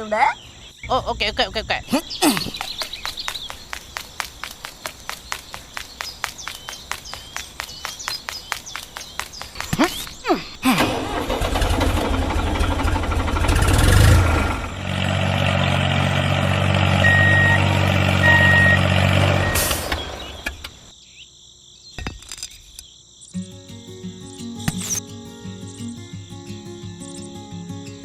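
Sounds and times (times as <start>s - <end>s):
heavy vehicle engine running: 10.6s - 20.8s
reversing beeper: 15.5s - 20.2s
music: 23.4s - 28.0s.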